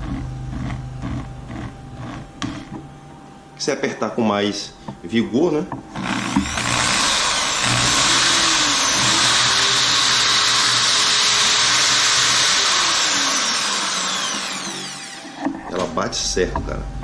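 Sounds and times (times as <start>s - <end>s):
impact drill motor whine: 5.9s - 15.6s.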